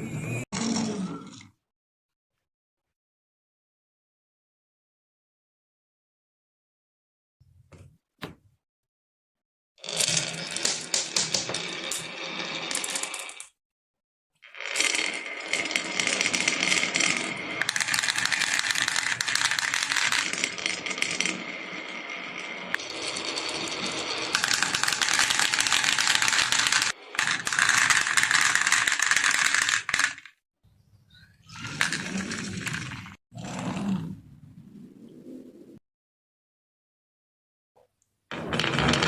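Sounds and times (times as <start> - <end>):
marbles rolling and clattering: 9.8 - 13.5, 14.4 - 30.3, 31.4 - 33.2, 38.3 - 39.0.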